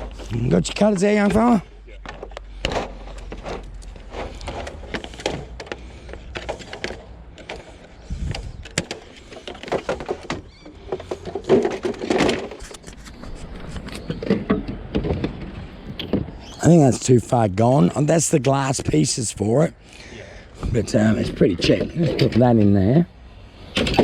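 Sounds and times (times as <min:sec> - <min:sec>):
junk being handled: 0:00.0 - 0:17.1, 0:20.6 - 0:22.9, 0:23.7 - 0:24.0.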